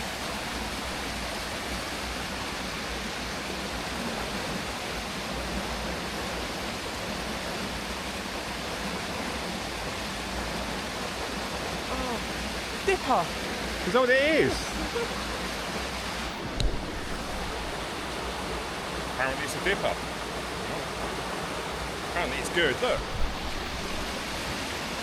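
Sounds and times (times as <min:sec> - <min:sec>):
river rushing over rocks: 0:00.0 - 0:25.0.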